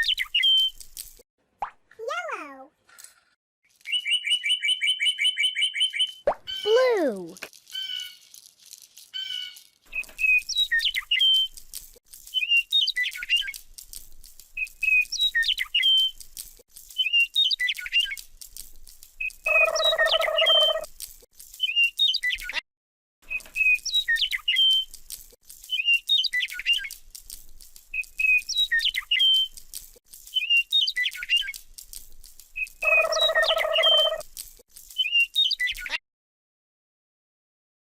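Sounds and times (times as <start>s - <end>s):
electronic bird chirps: 19.5s - 20.8s, 32.8s - 34.2s.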